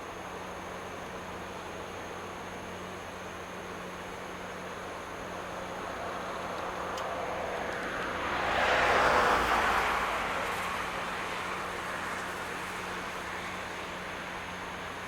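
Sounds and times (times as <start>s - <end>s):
vehicle passing by: 6.8s - 13.6s.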